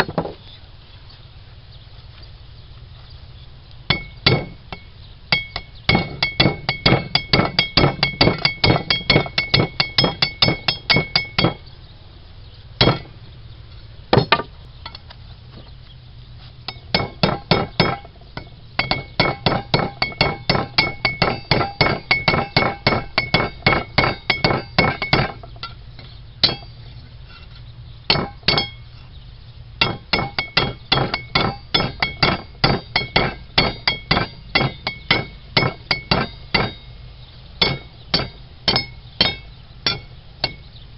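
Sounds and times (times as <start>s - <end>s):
hammer striking metal on anvil: 3.9s - 11.6s, 12.8s - 13.1s, 16.7s - 25.8s, 26.4s - 26.8s, 28.1s - 28.8s, 29.8s - 36.9s, 37.6s - 40.7s.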